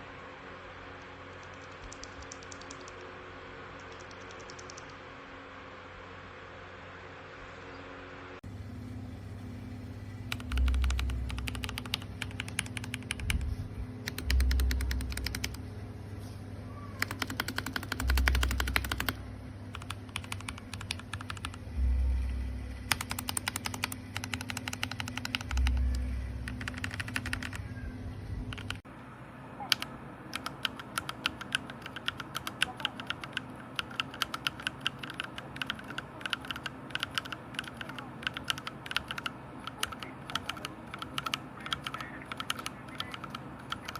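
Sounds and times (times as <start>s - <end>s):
mechanical keyboard typing: 1.3s - 3.0s, 3.8s - 5.0s, 10.3s - 15.6s, 17.0s - 21.8s, 22.8s - 27.7s, 28.5s - 28.8s, 29.7s - 43.9s.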